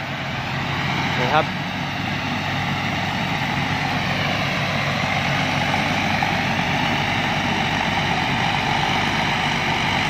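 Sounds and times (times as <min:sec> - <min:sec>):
combine harvester running: 0:00.0 - 0:10.0.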